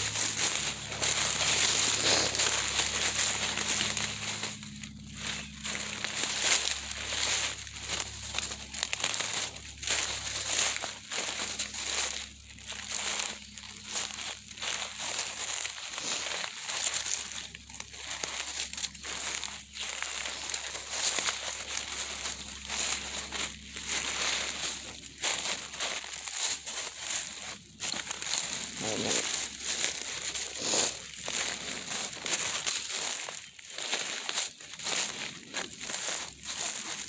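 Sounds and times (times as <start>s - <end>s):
footsteps crunching through dry leaves: 0.0s - 37.0s.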